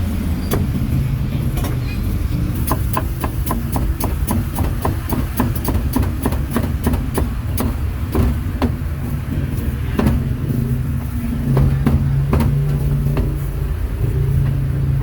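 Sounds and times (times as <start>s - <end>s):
traffic rumble: 0.0s - 15.0s.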